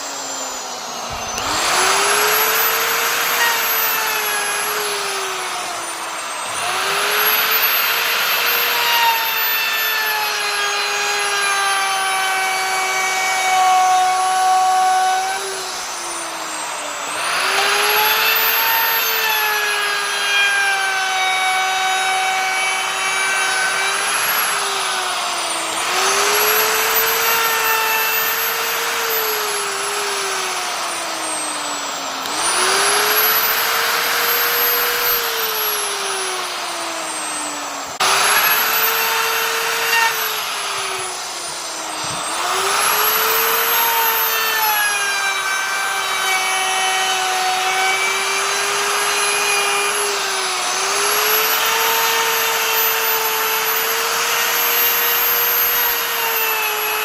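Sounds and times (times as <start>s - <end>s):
router cutting hiss: 0.0s - 57.0s
wood router whining: 0.0s - 57.0s.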